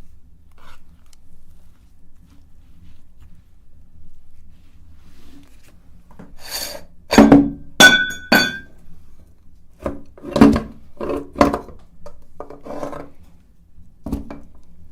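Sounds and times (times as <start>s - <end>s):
hard objects clinking and knocking: 7.2s - 8.7s.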